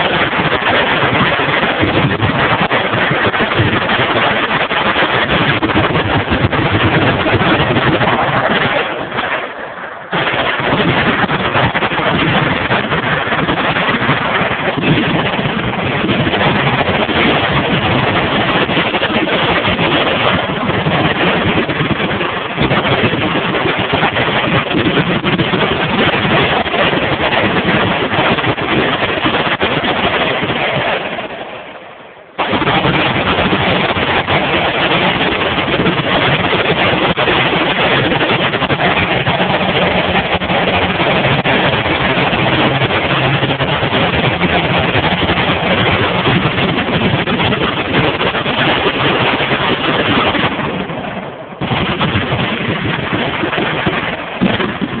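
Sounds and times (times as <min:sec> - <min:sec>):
machine guns firing: 0:32.4 - 0:50.9.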